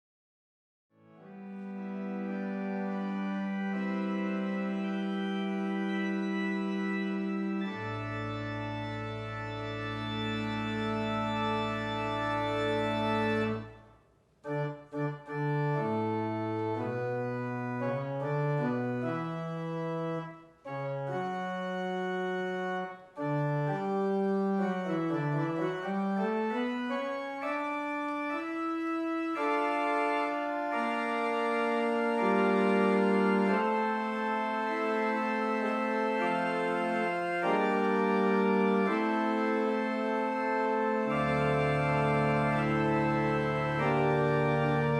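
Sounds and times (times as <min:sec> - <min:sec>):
organ music: 0:01.0 - 0:44.9.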